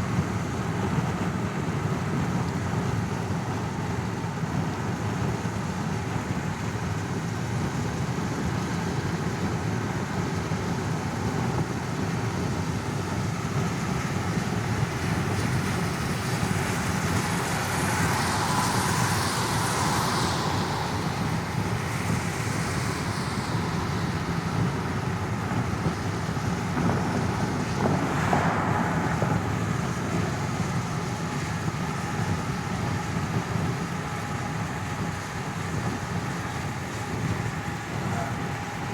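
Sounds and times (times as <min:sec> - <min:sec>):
car cabin road rumble: 0:11.3 - 0:33.8
hissing swell: 0:12.9 - 0:33.2.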